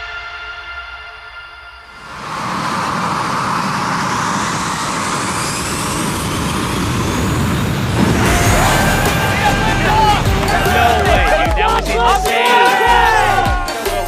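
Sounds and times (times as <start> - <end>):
music: 0.0 - 2.0, 8.0 - 14.0
faint high whine: 1.2 - 10.2
model jet motor whooshing: 2.0 - 10.4.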